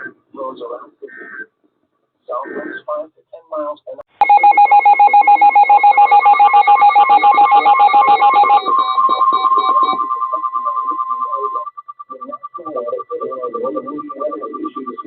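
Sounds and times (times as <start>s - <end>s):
electronic alert tone warbling: 4.3s - 15.0s.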